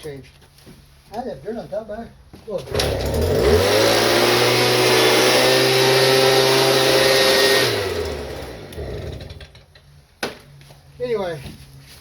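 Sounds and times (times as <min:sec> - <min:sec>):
small gasoline engine running: 0:02.7 - 0:09.7.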